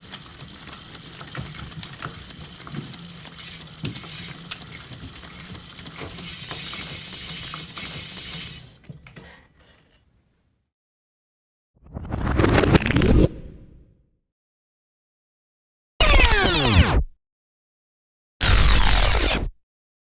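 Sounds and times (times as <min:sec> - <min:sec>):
rewind crackling whir: 0:00.0 - 0:09.3.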